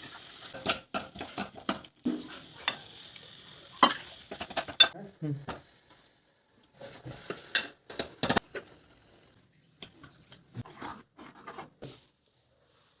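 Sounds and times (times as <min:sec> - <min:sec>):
metal utensils clanking and scraping: 0:03.8 - 0:05.0, 0:06.8 - 0:08.8.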